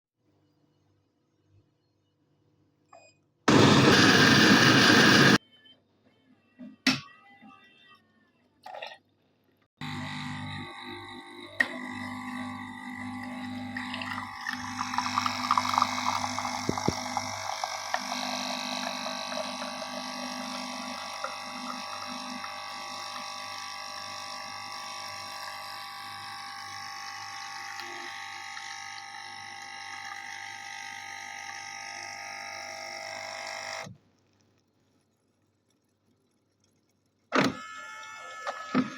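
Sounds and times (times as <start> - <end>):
espresso machine pump humming: 3.5 - 5.4, 9.8 - 33.9.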